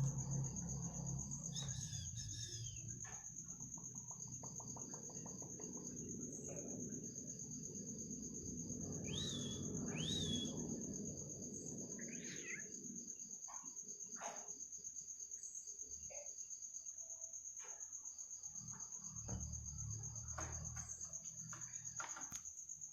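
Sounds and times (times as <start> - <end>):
crickets trilling: 0.0 - 22.9
bird calls: 1.4 - 7.0, 8.8 - 12.8.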